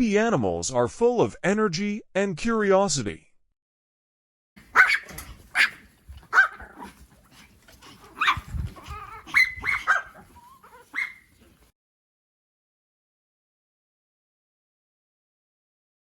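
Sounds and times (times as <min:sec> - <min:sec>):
puppy yipping: 0:04.7 - 0:07.0, 0:07.8 - 0:11.5.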